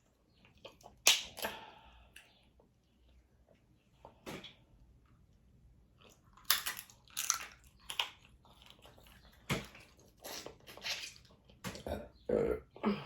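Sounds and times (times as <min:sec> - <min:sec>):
chewing: 0:05.9 - 0:12.0
crab shell crunching: 0:06.0 - 0:11.3.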